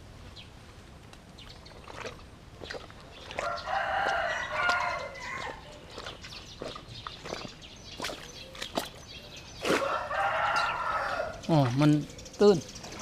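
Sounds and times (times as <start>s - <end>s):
rooster crowing: 3.4s - 5.6s, 9.8s - 11.4s.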